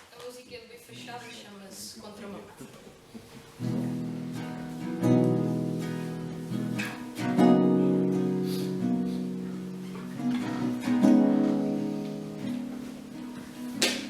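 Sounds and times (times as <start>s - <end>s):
acoustic guitar strumming chords: 3.6s - 14.0s.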